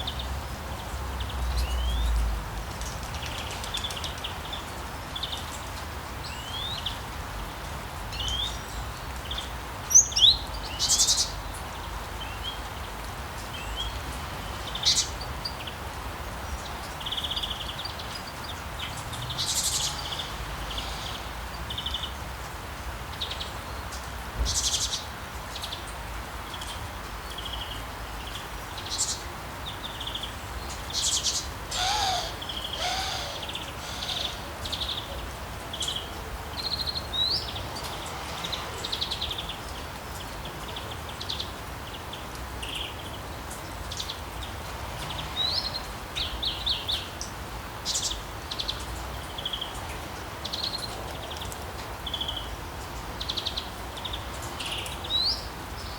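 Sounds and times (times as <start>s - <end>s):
outdoor ambience hiss: 0.0s - 55.9s
birds chirping: 28.7s - 37.7s.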